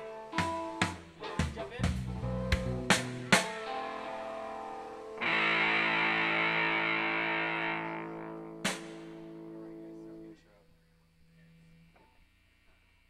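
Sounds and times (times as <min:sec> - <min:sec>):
distorted electric guitar: 0:00.0 - 0:10.4
sharp knock: 0:08.6 - 0:09.1.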